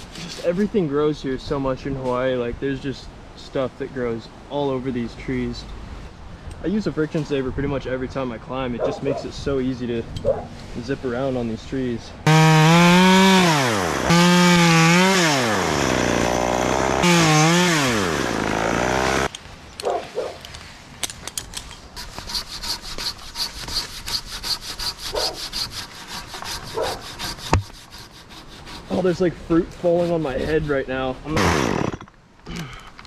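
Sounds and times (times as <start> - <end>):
chainsaw revving and idling: 12.3 - 19.3, 31.3 - 32.1
hand saw cutting wood: 12.3 - 19.3, 22.0 - 32.1.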